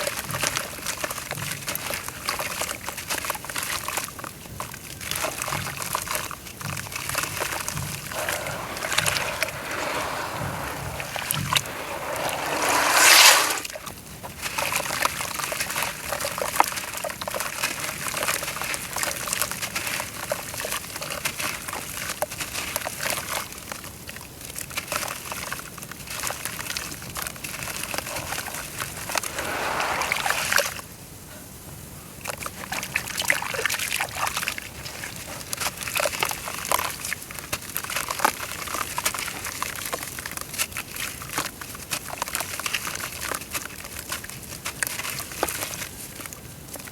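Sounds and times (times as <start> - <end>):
water sloshing and trickling: 5.1 - 22.1, 26.0 - 30.8
dirt crackling: 7.7 - 13.8, 27.8 - 30.8
water rushing: 8.1 - 13.8, 28.0 - 30.8.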